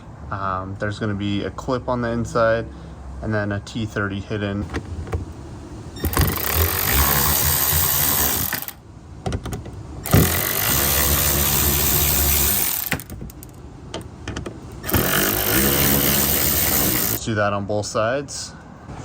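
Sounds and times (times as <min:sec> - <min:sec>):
power drill driving out screws: 0:06.0 - 0:08.8, 0:10.1 - 0:13.5, 0:14.8 - 0:17.2.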